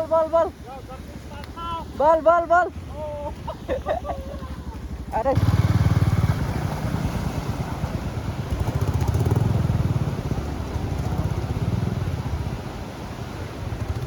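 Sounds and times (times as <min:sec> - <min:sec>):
motorcycle engine revving: 0:04.8 - 0:14.0.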